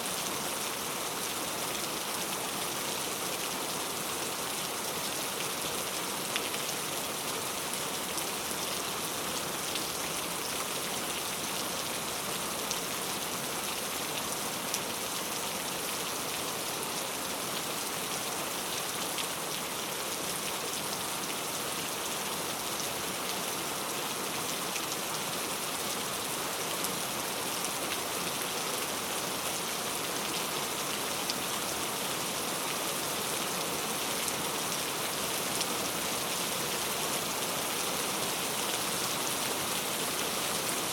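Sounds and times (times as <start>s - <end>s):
rain pattering on a surface: 0.1s - 40.9s.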